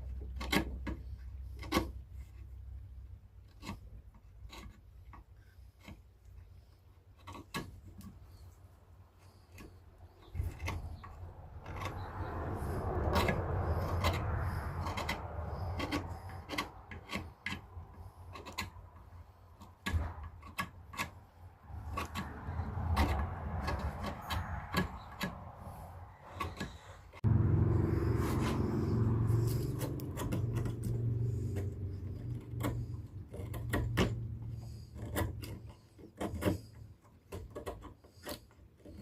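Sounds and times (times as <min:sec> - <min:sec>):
knife scraping bark off branch: 0:09.3 - 0:36.8
loud low steady sound: 0:27.2 - 0:30.7.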